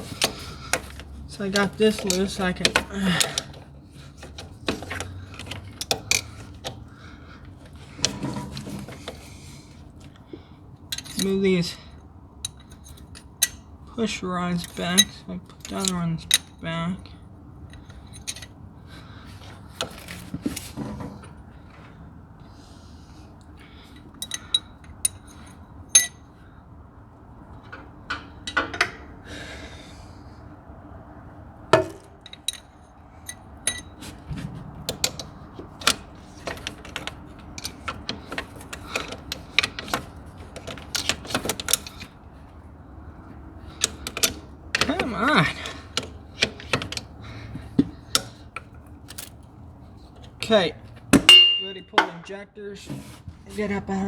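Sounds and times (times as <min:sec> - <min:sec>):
metallic clinks of hand tools: 0:24.1 - 0:26.2, 0:31.8 - 0:42.1.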